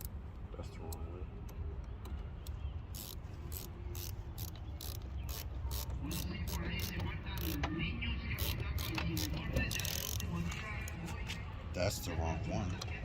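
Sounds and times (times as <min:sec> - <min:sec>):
ratchet wrench clicking: 0:02.9 - 0:07.6, 0:08.4 - 0:10.3.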